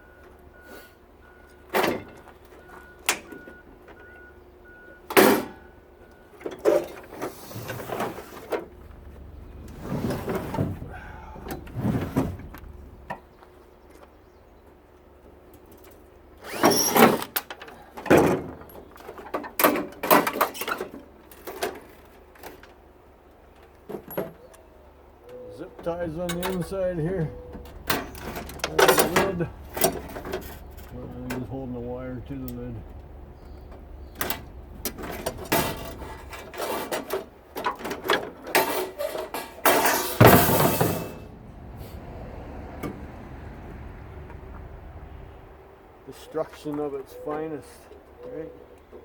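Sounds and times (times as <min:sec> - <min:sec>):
clunks and knocks on metal casing: 0:01.7 - 0:04.2, 0:17.0 - 0:22.8, 0:25.7 - 0:31.6, 0:32.2 - 0:41.4
metal scraping: 0:25.8 - 0:42.1.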